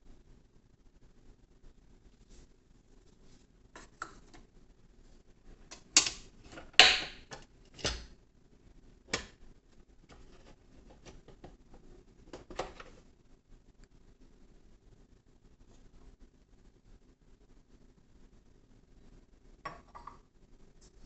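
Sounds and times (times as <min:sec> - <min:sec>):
hard objects clicking and knocking: 0:05.7 - 0:08.1, 0:09.1 - 0:09.4.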